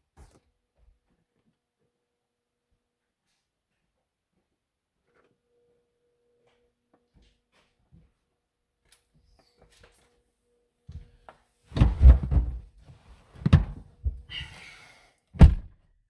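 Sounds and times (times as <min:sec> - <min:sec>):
heavy thumps and knocks: 0:11.8 - 0:12.7, 0:13.4 - 0:14.3.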